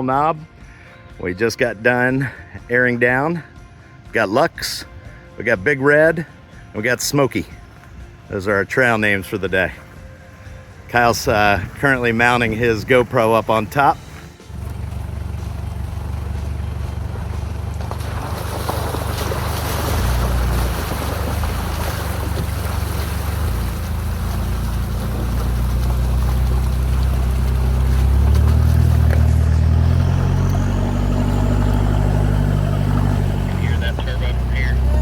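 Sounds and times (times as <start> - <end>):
engine drone: 13.8 - 35.0.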